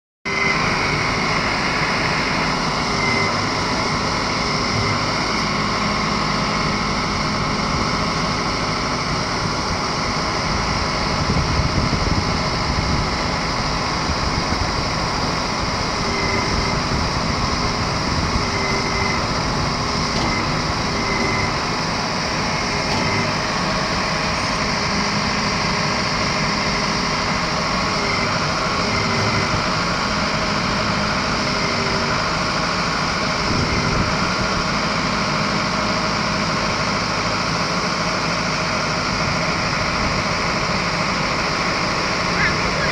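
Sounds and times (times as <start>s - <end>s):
mixer truck engine running: 0.3s - 42.9s.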